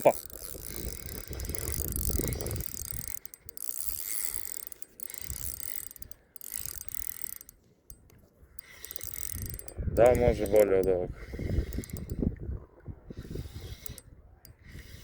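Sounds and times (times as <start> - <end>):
fishing reel gears whirring: 0.0 - 12.4, 13.0 - 15.0.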